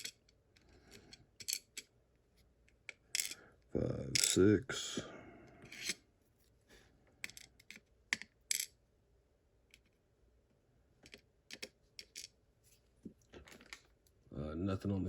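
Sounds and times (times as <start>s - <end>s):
small metal lock parts clicking: 0.9s - 1.9s.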